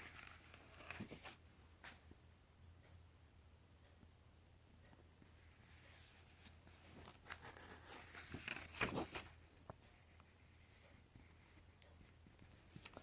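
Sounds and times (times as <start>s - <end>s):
paper pages rustling: 0.0s - 1.4s, 5.6s - 13.0s.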